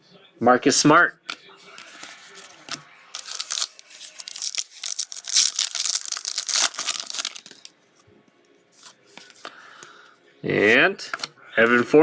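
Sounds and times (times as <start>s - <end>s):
plastic wrapper tearing and crinkling: 1.8s - 7.7s.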